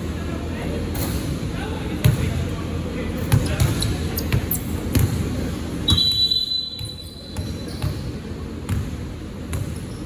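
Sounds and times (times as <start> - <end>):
basketball bouncing on gym floor: 3.3 - 5.3, 6.8 - 9.9
shrill whistle blast: 5.9 - 7.4.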